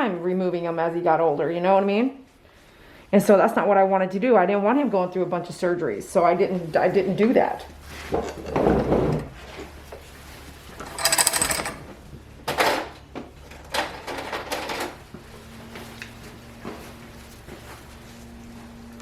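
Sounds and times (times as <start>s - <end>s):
grooming tools clattering: 10.8s - 11.9s.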